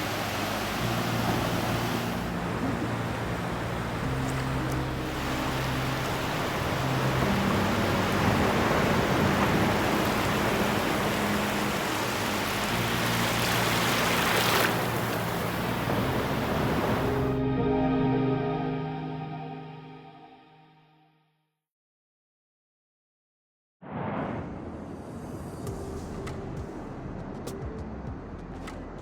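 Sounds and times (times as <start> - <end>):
ocean surf breaking on beach: 0.0 - 17.4.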